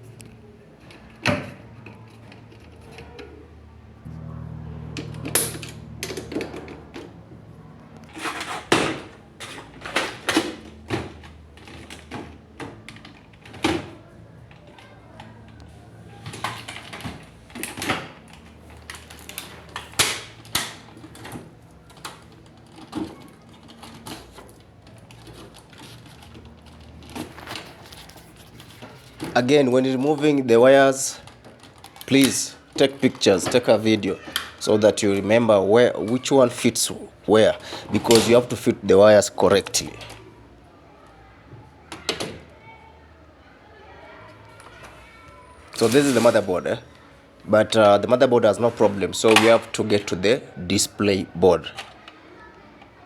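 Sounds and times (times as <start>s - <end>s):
faint low hum: 0.0s - 10.0s.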